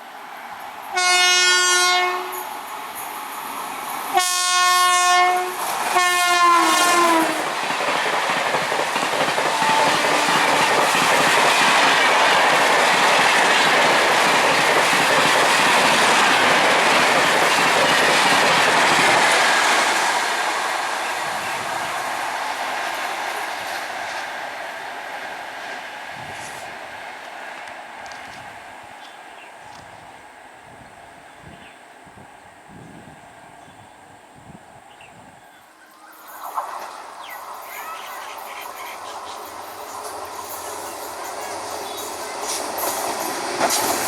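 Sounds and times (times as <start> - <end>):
train running past: 0.0 - 44.0
train horn blasts: 0.9 - 2.5, 4.1 - 7.4, 9.5 - 10.9.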